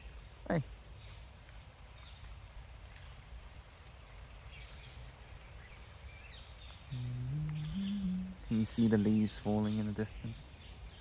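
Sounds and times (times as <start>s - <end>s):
steady soft hiss: 0.0s - 11.0s
distant bird chirps: 4.4s - 11.0s.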